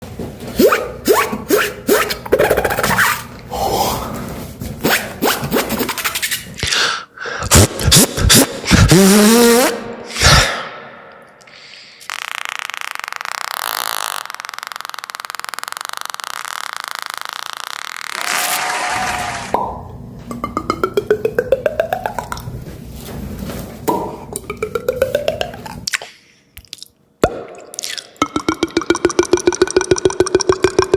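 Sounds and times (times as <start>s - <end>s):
beatboxer mouth clicks and pops: 2.0s - 3.1s, 5.9s - 9.1s, 11.1s - 18.2s, 19.6s - 22.6s, 23.9s - 30.9s
long steady mouth hiss: 11.4s - 18.8s.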